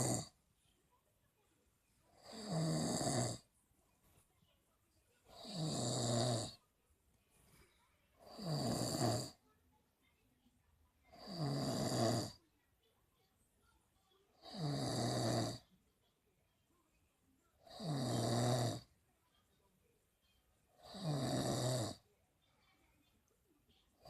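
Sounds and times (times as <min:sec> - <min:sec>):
person snoring: 0:00.0 - 0:00.3, 0:02.2 - 0:03.4, 0:05.3 - 0:06.6, 0:08.3 - 0:09.4, 0:11.2 - 0:12.4, 0:14.4 - 0:15.6, 0:17.7 - 0:18.9, 0:20.8 - 0:22.0
quiet breathing: 0:00.0 - 0:10.2.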